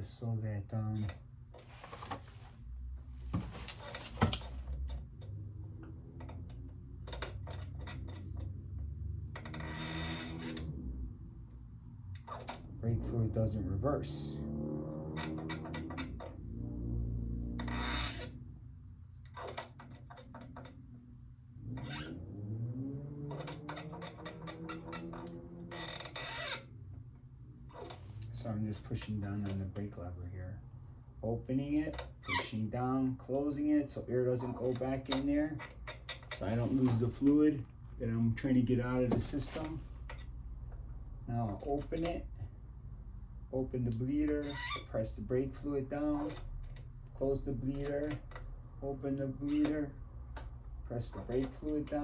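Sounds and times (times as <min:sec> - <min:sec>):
low steady hum: 0:00.0 - 0:52.0
light metallic clicks and rubbing: 0:03.2 - 0:10.8, 0:19.2 - 0:21.0, 0:23.2 - 0:30.0
low hum rising in pitch: 0:12.6 - 0:18.8, 0:21.5 - 0:25.8.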